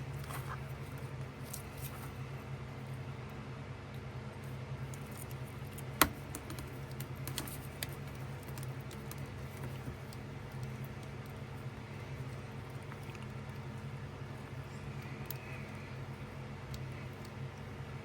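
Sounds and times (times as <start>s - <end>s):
steady low hum: 0.0s - 18.0s
wooden sticks clicking and tapping: 4.9s - 13.7s.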